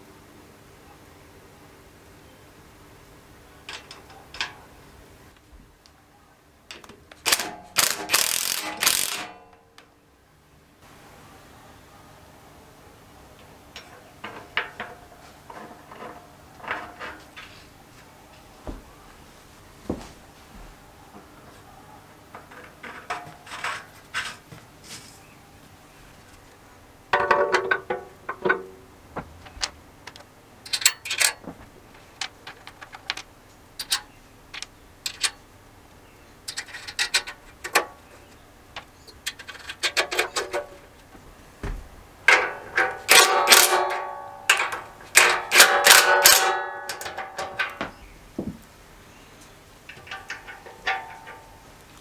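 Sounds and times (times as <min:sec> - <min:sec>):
metal tools clinking and clattering: 0:07.3 - 0:09.5, 0:29.4 - 0:35.4, 0:36.5 - 0:40.8, 0:42.3 - 0:47.9, 0:49.9 - 0:51.7
ringing metal knocks: 0:27.1 - 0:31.6, 0:42.3 - 0:48.6, 0:49.9 - 0:51.7.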